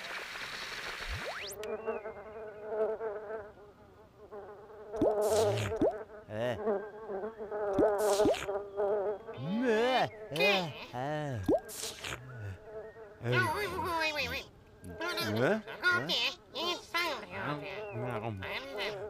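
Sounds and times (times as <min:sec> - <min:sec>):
electronic cartoon sound effects: 0:07.8 - 0:08.5.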